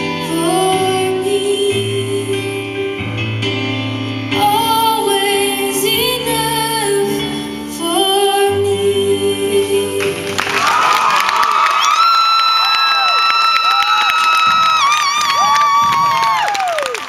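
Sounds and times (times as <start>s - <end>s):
woman singing: 0.0s - 3.0s, 4.3s - 10.4s
piano accompaniment: 0.0s - 10.6s
audience cheering and whooping: 10.3s - 17.0s.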